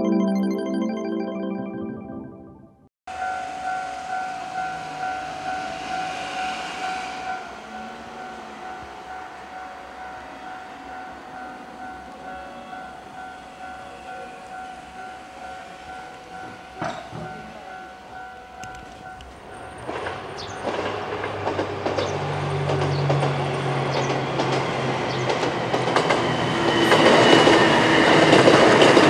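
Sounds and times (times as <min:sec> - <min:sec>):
level crossing warning bell: 0:03.1 - 0:20.8
train passing: 0:03.1 - 0:29.0.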